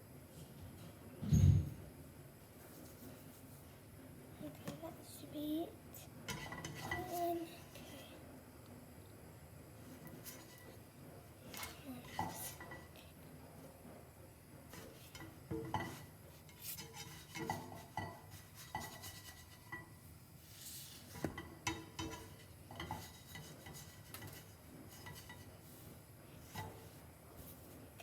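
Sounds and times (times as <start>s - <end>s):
pans and cutlery clinking: 6.3s - 7.2s, 14.7s - 20.0s, 21.1s - 25.5s.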